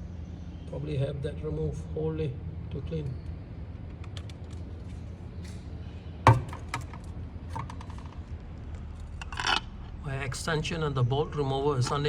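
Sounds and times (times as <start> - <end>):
low steady hum: 0.0 - 12.0
sharp knock: 6.3 - 7.0
metal tools tapping engine parts: 6.3 - 8.2.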